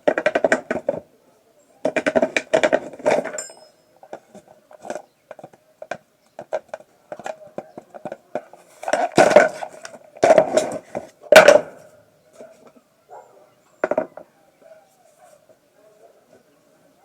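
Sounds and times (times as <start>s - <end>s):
metal tools clinking: 3.1s - 3.9s
ringing metal knocks: 3.1s - 3.9s.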